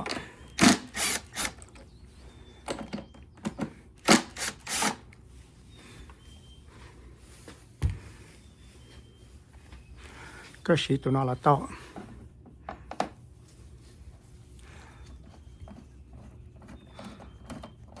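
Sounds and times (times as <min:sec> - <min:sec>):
tools clicking and knocking: 0:00.0 - 0:01.9, 0:02.6 - 0:05.0.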